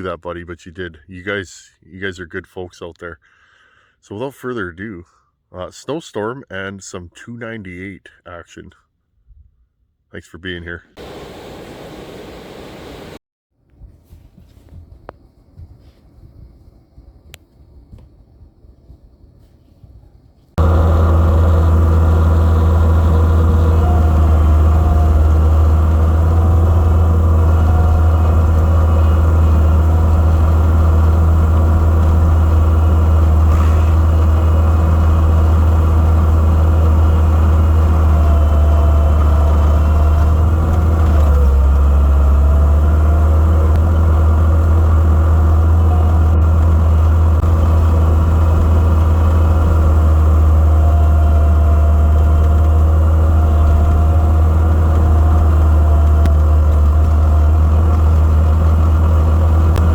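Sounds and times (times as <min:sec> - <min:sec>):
diesel engine droning: 0:11.0 - 0:13.2, 0:20.6 - 0:59.9.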